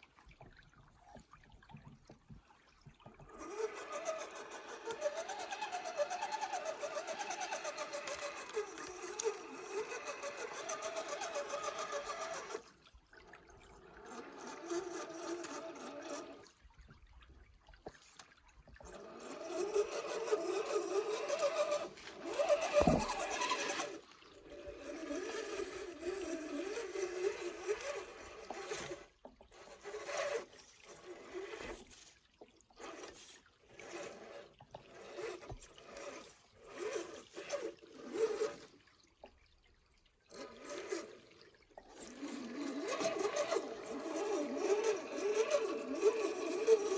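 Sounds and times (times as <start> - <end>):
rc car motor and gears whining: 3.1 - 12.8, 13.8 - 16.4, 18.8 - 32.1, 32.8 - 38.7, 40.3 - 41.2, 41.8 - 46.9.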